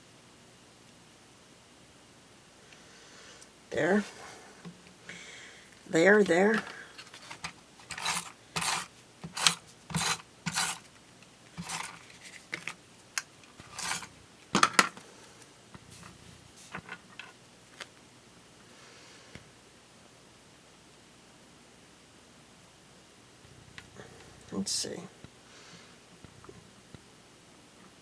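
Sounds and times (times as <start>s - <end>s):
paper rustling: 5.8s - 10.9s, 11.5s - 12.8s, 13.5s - 15.0s
paper rubbing and scraping: 6.5s - 10.9s, 11.6s - 12.8s, 13.6s - 14.2s.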